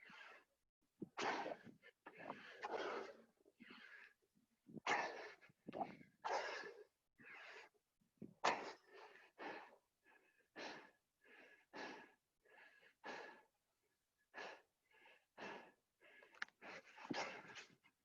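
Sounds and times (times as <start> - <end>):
person breathing hard: 1.4 - 4.2, 8.6 - 13.6, 14.3 - 17.8.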